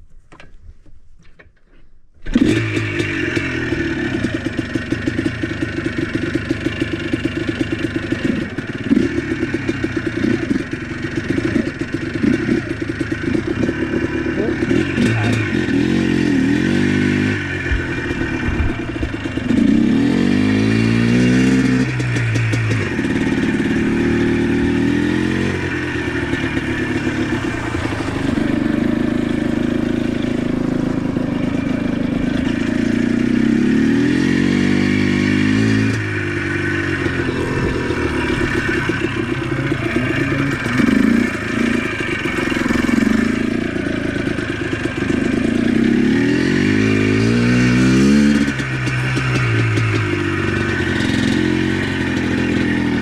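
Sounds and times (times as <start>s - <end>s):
atv engine revving: 2.3s - 53.0s
machine rattling over rough ground: 11.8s - 33.8s.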